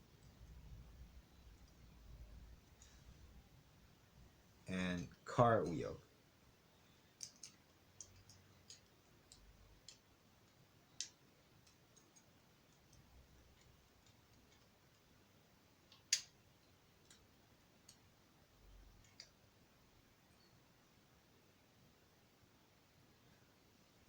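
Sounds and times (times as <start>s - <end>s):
plastic bricks clicking together: 7.2s - 10.1s, 15.9s - 16.4s.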